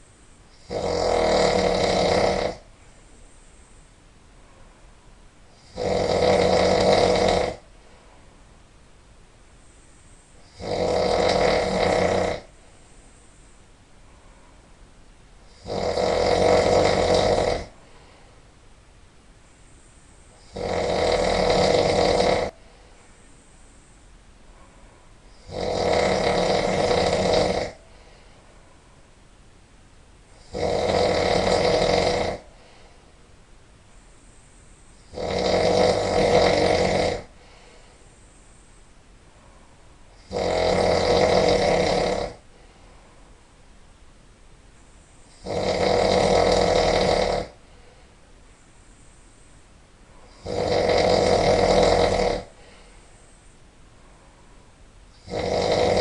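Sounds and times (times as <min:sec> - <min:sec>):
person snoring loudly: 0:00.5 - 0:02.7, 0:05.5 - 0:07.7, 0:10.4 - 0:12.5, 0:15.5 - 0:18.1, 0:20.4 - 0:22.6, 0:25.3 - 0:27.8, 0:30.3 - 0:32.8, 0:35.0 - 0:37.6, 0:40.1 - 0:42.4, 0:45.3 - 0:47.6, 0:50.2 - 0:52.9, 0:55.1 - 0:56.0.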